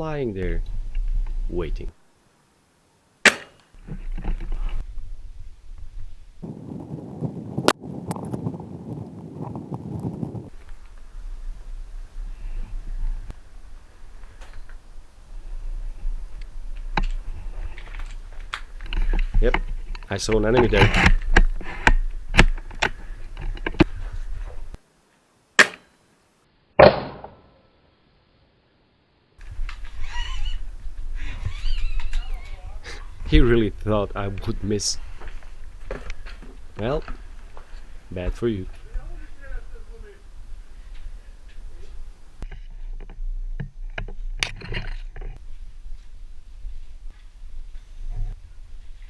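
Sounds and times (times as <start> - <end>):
airsoft rifle shot crack: 3.2 - 3.6, 25.6 - 25.9, 26.8 - 27.5
rustling: 29.4 - 49.0.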